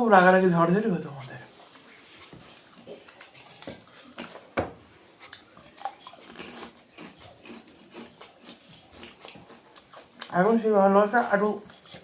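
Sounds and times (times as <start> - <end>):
chewing and lip smacking: 0.8 - 12.0.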